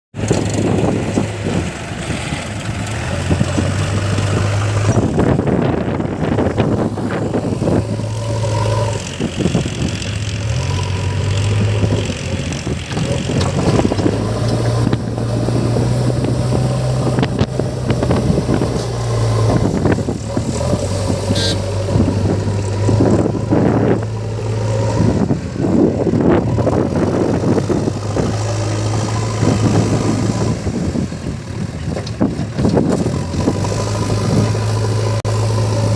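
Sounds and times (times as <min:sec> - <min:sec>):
knocks and scraping: 0:00.1 - 0:25.2
backhoe loader diesel engine: 0:00.1 - 0:35.9
tractor engine running: 0:00.1 - 0:35.9.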